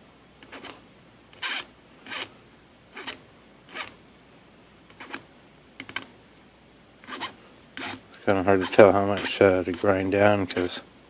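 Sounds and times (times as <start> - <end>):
file rasping on copper: 7.0 - 9.8.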